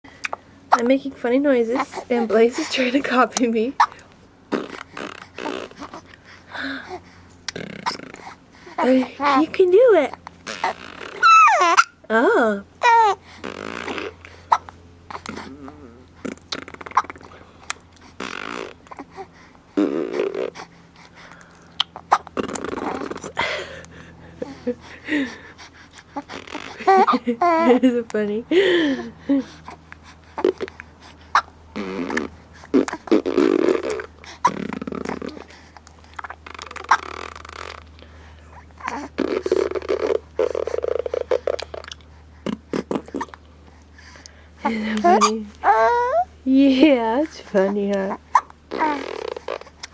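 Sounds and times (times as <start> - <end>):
baby blowing raspberries: 3.9 - 8.8, 10.4 - 11.9, 12.9 - 27.2, 30.2 - 46.2, 48.4 - 49.9.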